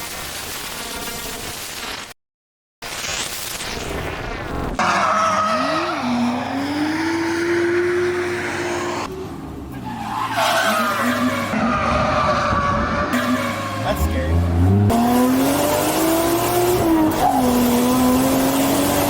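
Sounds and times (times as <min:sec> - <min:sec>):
car engine revving: 0:04.8 - 0:19.0.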